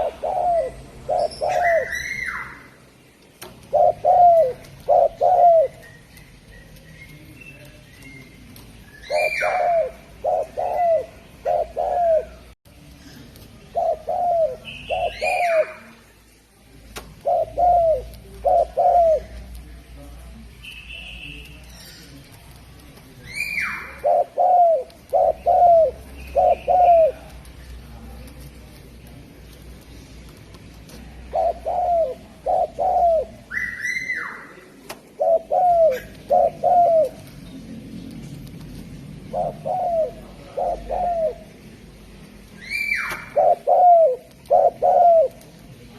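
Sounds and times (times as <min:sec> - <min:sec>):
dove cooing: 0:00.0 - 0:02.8, 0:03.5 - 0:06.8, 0:09.0 - 0:12.6, 0:13.6 - 0:16.0, 0:17.1 - 0:19.5, 0:23.3 - 0:27.4, 0:30.9 - 0:37.4, 0:39.2 - 0:41.6, 0:42.6 - 0:45.6
bird chirping: 0:00.0 - 0:12.5, 0:14.4 - 0:15.9.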